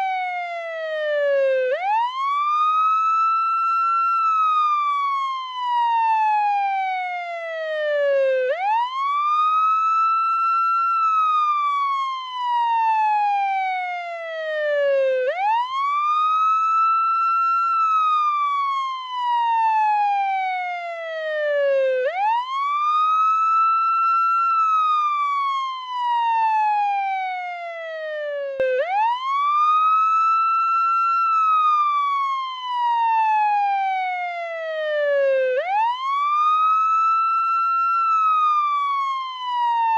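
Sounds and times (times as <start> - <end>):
ambulance siren wailing: 0.0 - 39.9.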